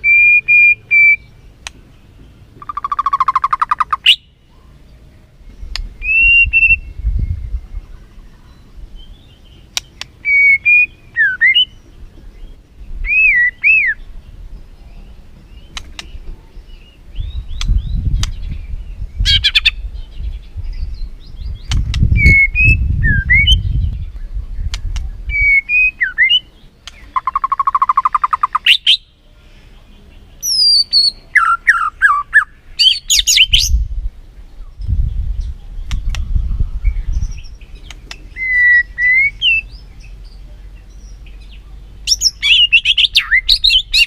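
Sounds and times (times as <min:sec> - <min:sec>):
bird singing whistled phrases: 0:00.0 - 0:01.4, 0:06.0 - 0:07.4, 0:08.0 - 0:11.8, 0:13.0 - 0:14.1, 0:20.8 - 0:23.9, 0:25.3 - 0:29.1, 0:30.4 - 0:33.8, 0:36.8 - 0:40.2, 0:40.8 - 0:44.0
sharp bird clicks: 0:01.6 - 0:01.9, 0:02.6 - 0:04.2, 0:05.7 - 0:05.9, 0:09.7 - 0:10.2, 0:15.6 - 0:16.3, 0:17.5 - 0:18.6, 0:21.6 - 0:22.1, 0:24.2 - 0:25.1, 0:26.3 - 0:29.0, 0:35.8 - 0:36.4, 0:37.3 - 0:39.7.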